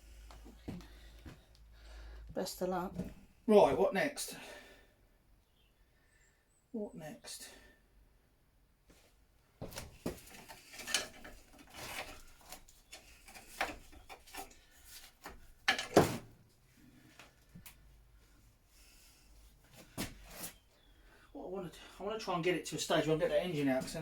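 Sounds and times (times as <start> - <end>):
tools knocking and scraping: 9.6 - 16.3
parts clattering: 9.6 - 16.4.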